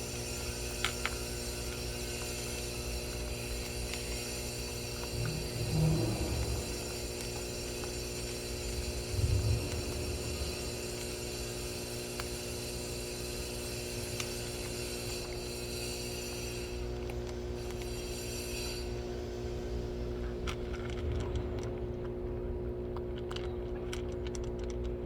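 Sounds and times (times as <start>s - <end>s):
machine hum: 4.7s - 12.6s
high whine: 5.0s - 12.4s.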